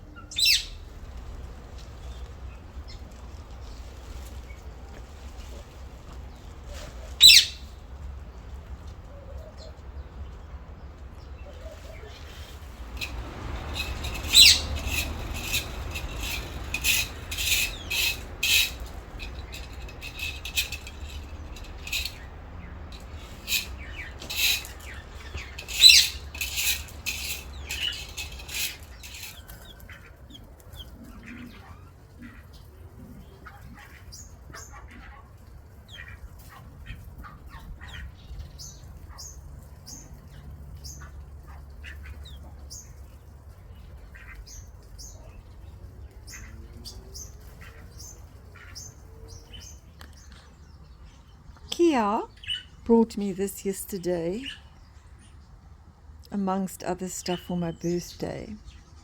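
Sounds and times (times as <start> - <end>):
bird chirping: 0.1 - 0.9, 7.2 - 7.7, 11.2 - 32.7.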